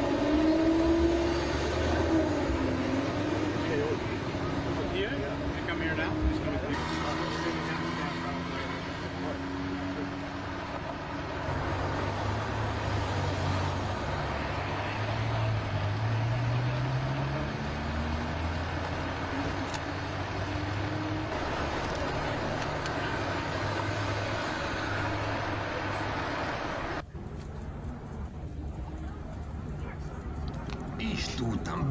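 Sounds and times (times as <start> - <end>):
engine revving up: 0.0 - 27.0
vehicle engines in street: 0.0 - 31.9.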